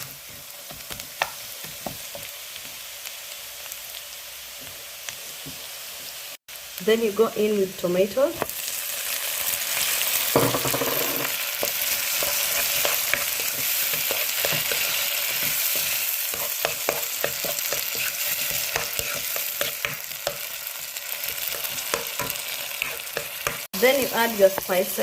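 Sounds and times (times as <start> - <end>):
vegetables sizzling in oil: 0.0 - 25.0
spoon scraping a pan: 9.8 - 24.8.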